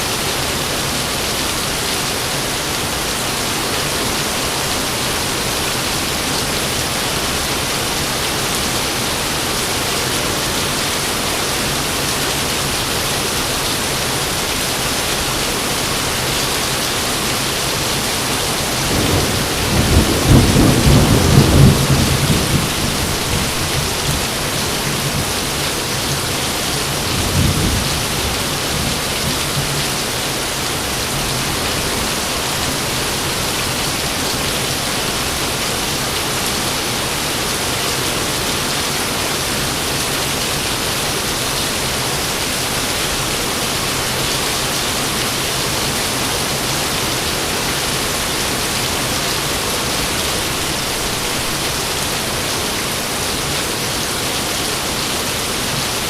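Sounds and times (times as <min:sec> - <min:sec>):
heavy rain: 0:00.0 - 0:56.0
thunder rumbling: 0:18.8 - 0:25.3.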